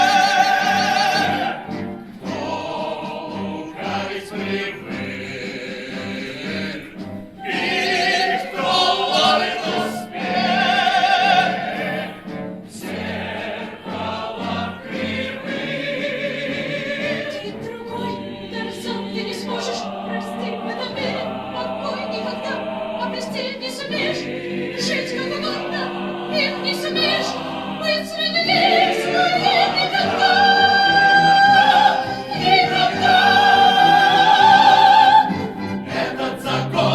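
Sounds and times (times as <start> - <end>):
choral and operatic singing: 0.0 - 36.9
singing voice with strong vibrato: 7.4 - 36.9.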